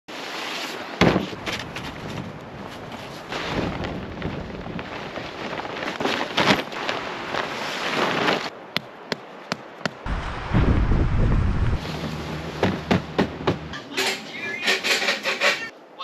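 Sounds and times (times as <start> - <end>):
wind buffeting microphone: 1.3 - 6.0, 10.1 - 13.7.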